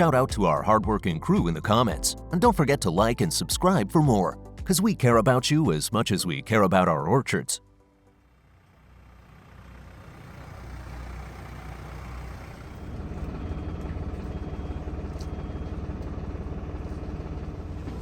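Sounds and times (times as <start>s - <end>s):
vehicle engine running at low revs: 8.0s - 18.0s.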